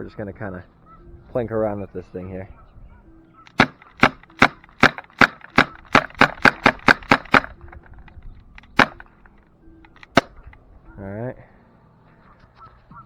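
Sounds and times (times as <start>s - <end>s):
airsoft pistol shots: 3.5s - 7.9s, 8.6s - 10.5s.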